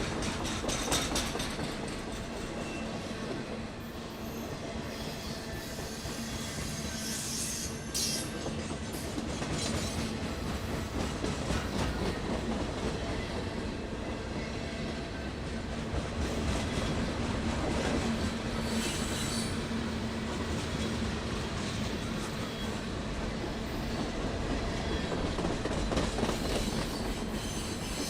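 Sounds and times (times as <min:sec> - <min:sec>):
train rumbling on rails: 0:00.0 - 0:28.0
high wheel squeals: 0:04.2 - 0:08.4.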